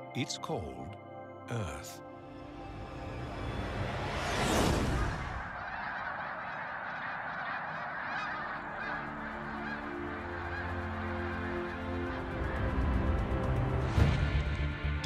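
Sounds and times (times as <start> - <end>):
soft trailer music: 0.0 - 15.0
whoosh: 3.3 - 5.6
geese honking: 5.1 - 14.0.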